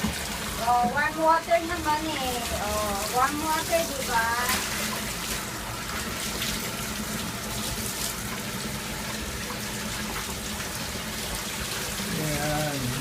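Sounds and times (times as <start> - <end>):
water running from a tap: 0.0 - 13.0.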